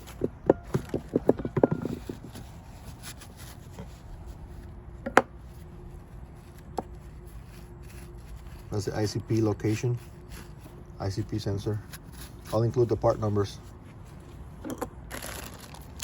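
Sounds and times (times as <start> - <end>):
metal tools clicking and knocking: 0.1 - 2.2.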